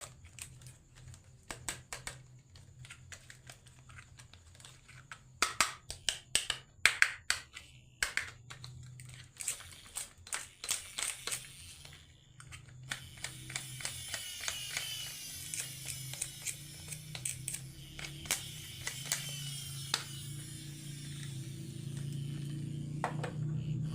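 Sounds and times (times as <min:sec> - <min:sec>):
marbles clicking on wooden run: 0:05.5 - 0:20.5.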